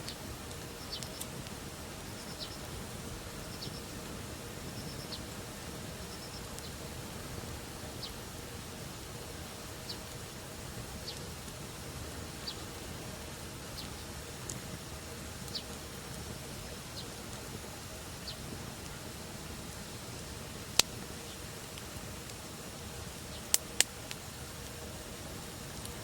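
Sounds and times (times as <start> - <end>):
campfire hissing: 0.0 - 26.0
wood crackling pops: 23.4 - 24.8.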